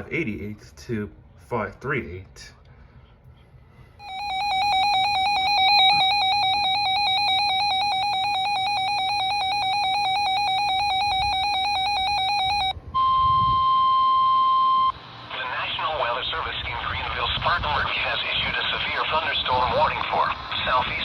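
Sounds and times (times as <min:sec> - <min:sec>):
warbling electronic alarm tone: 0:04.0 - 0:14.9.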